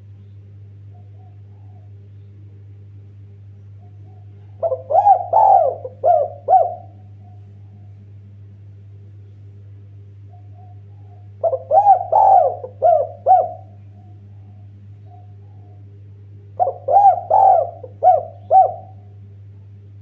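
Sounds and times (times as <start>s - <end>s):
dove cooing: 0.8s - 2.1s, 3.8s - 8.0s, 10.2s - 19.3s.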